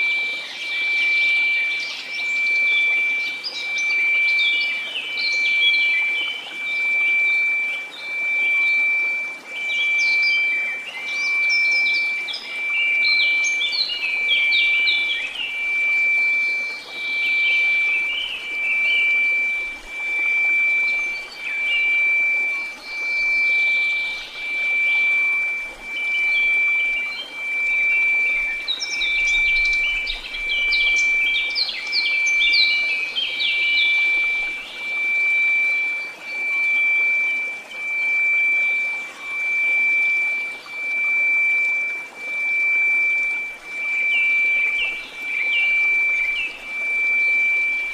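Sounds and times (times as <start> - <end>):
steady high tone: 5.4 - 47.9
birds chirping and singing: 9.6 - 34.8.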